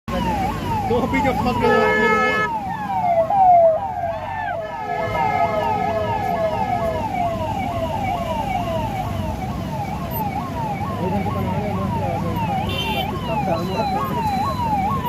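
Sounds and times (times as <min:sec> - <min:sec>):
siren yelping: 0:00.1 - 0:15.0.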